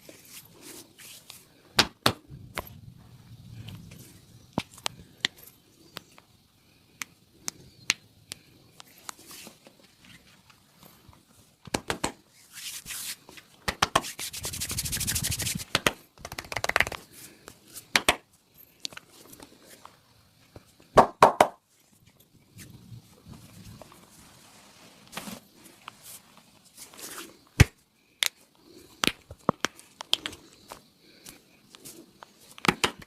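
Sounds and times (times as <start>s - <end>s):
hands slapping skin: 11.6s - 12.2s, 13.6s - 17.0s, 17.9s - 18.2s, 29.0s - 30.4s, 32.6s - 33.0s
hands rubbing skin: 12.5s - 17.2s.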